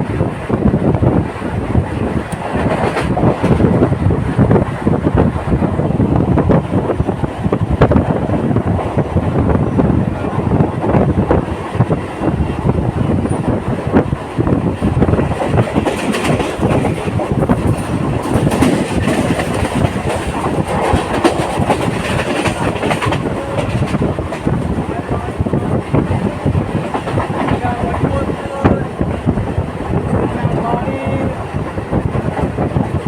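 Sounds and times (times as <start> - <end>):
train wheels rattling and clattering: 0.0 - 33.0.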